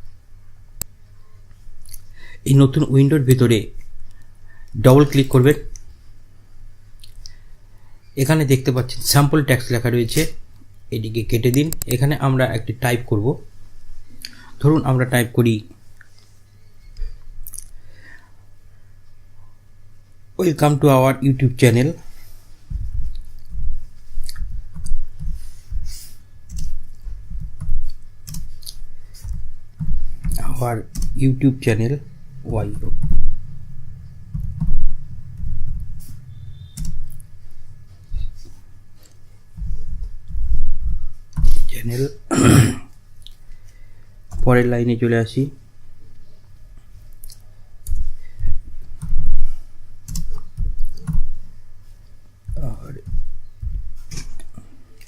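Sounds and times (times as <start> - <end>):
computer keyboard typing: 26.5 - 31.4, 34.3 - 37.2, 50.0 - 51.3.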